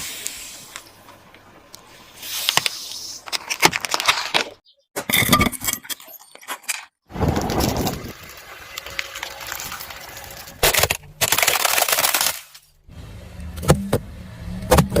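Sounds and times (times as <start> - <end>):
brittle items crunching under tyre: 2.5 - 4.6, 6.3 - 12.8
sharp cracks: 7.1 - 12.7.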